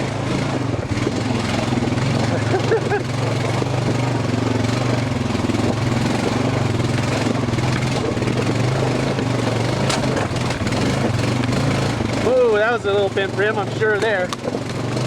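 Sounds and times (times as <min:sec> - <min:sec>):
atv engine running: 0:00.0 - 0:15.0
wheel striking rock: 0:03.6 - 0:15.0
clattering over rocks: 0:07.1 - 0:11.7, 0:13.4 - 0:15.0.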